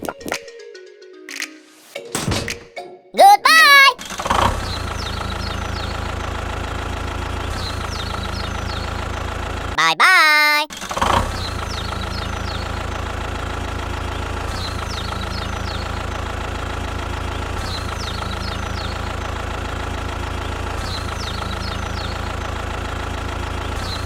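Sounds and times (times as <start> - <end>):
vehicle engine idling: 4.5 - 9.8, 11.3 - 24.0.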